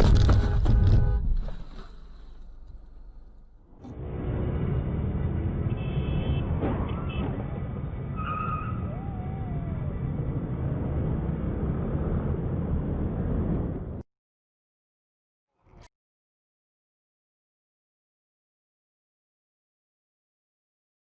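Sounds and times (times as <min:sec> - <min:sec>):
car road and engine rumble: 0:00.0 - 0:14.0.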